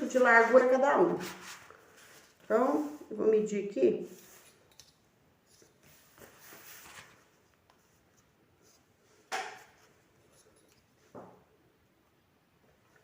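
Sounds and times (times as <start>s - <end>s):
foam sheet sliding rub: 0.4s - 3.1s.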